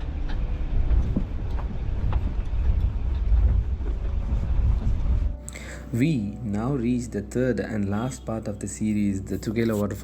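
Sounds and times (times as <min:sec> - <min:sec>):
vehicle rumble on rough road: 0:00.0 - 0:05.4.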